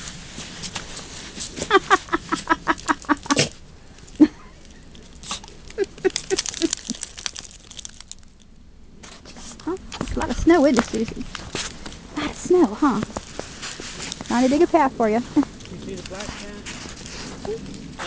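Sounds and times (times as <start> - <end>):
snow shovel crunching and scraping: 0.0 - 2.5, 11.4 - 18.0.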